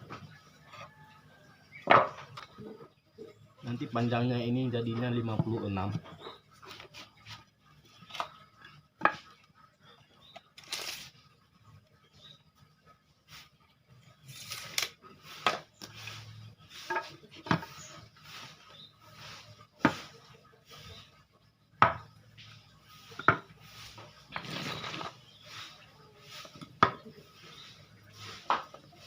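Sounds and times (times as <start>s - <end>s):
wooden pieces and tools knocking: 1.7s - 2.9s, 5.0s - 9.6s, 16.8s - 17.9s, 21.8s - 22.2s, 23.1s - 23.6s, 26.7s - 27.1s, 28.4s - 28.9s.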